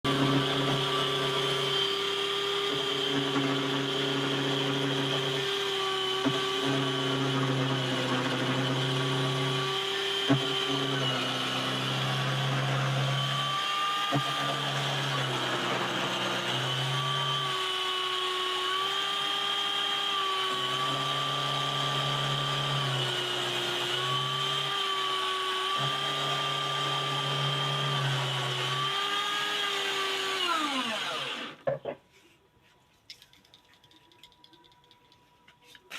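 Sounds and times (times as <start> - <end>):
lathe motor whining: 0.0 - 31.7.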